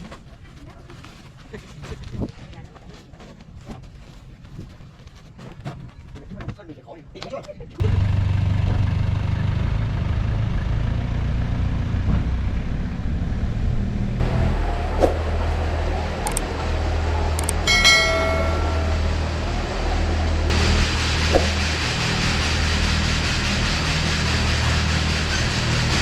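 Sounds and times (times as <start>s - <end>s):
engine humming: 7.8s - 26.0s
short sharp tone: 17.3s - 20.3s.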